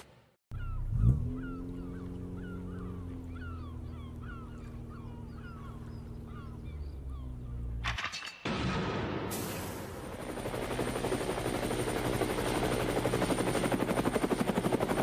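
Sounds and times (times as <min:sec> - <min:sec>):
low engine drone: 0:00.5 - 0:08.1
birds calling: 0:00.5 - 0:08.3.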